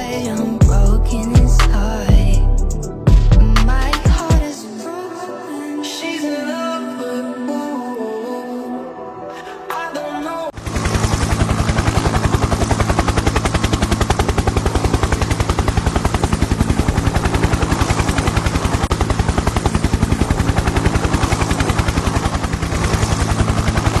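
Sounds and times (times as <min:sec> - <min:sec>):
helicopter rotor chopping: 0:00.0 - 0:04.5, 0:10.5 - 0:24.0.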